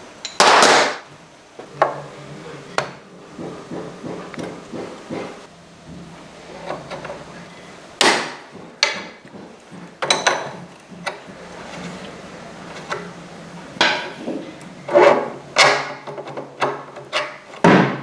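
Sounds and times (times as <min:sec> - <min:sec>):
metal tools clanking on parts: 0:00.2 - 0:00.6, 0:10.0 - 0:13.2.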